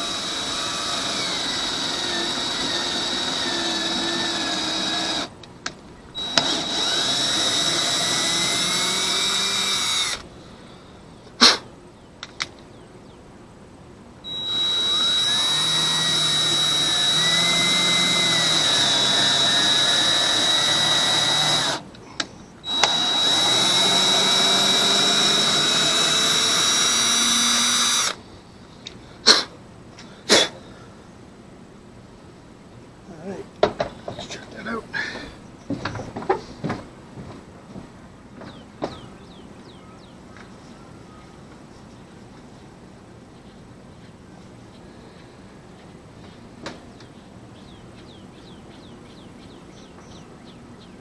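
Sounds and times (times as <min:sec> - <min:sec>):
electric drill running: 0:00.0 - 0:05.3, 0:06.2 - 0:10.2, 0:14.3 - 0:21.9, 0:22.6 - 0:28.2.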